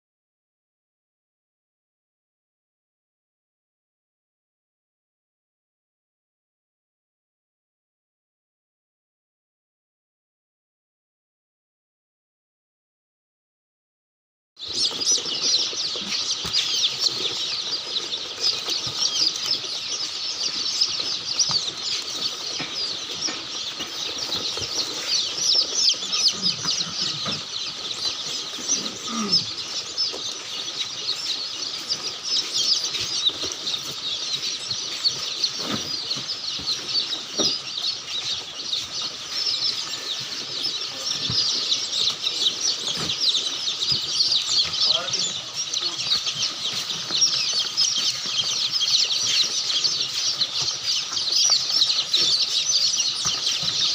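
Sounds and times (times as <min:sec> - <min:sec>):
chickens chirping: 0:14.6 - 0:53.9.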